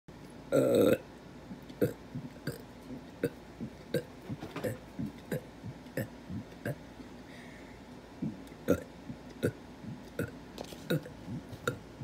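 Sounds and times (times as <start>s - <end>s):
person burping: 0.5s - 1.1s, 1.8s - 2.6s, 3.2s - 6.8s, 8.7s - 9.6s, 10.9s - 11.8s.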